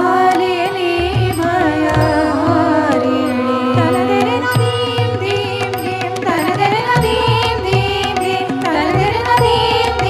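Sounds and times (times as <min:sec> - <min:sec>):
tabla drumming: 0:00.0 - 0:10.0
melodic line with gliding notes: 0:01.4 - 0:08.0.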